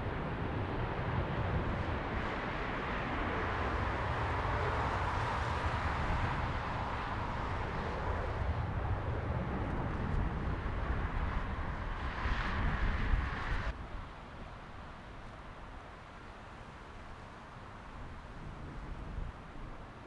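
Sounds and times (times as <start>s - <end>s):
jet engines rushing: 0.0s - 13.7s
wind buffeting microphone: 0.0s - 14.1s.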